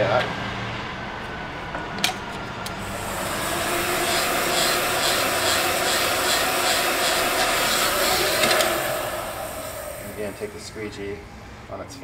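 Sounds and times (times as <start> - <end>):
faint motor whine: 2.6 - 12.0
heat gun blowing air: 2.8 - 11.0.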